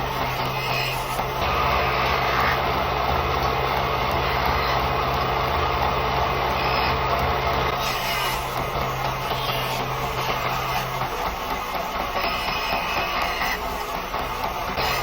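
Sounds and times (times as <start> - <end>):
wood lathe motor hum: 0.0 - 15.0.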